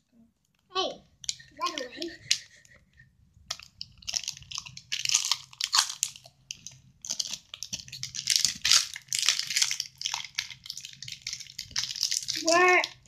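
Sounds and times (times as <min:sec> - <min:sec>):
plastic wrappers crinkling: 0:03.5 - 0:13.0.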